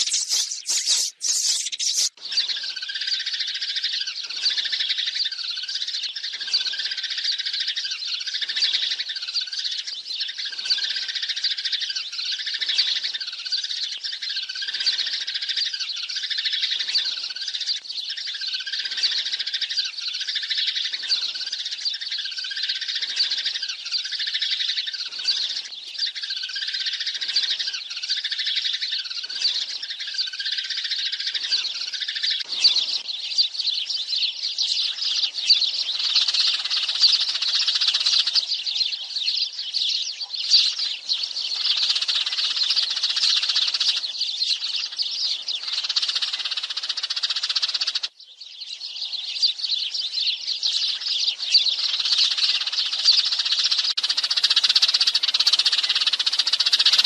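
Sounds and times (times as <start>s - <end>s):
sparrows chirping: 0.0s - 57.0s.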